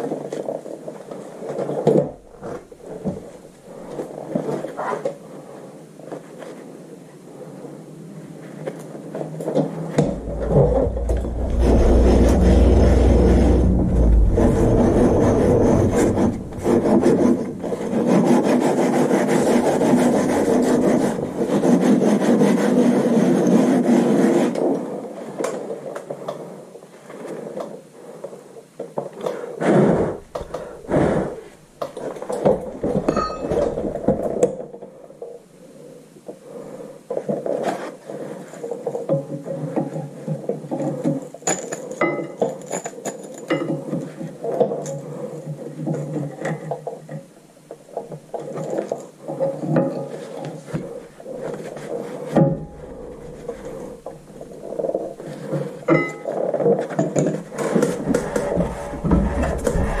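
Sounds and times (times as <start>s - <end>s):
abrasive scrubbing on metal: 10.0s - 22.7s
scrapes and knocks: 10.0s - 22.9s, 48.3s - 55.7s, 56.3s - 60.0s.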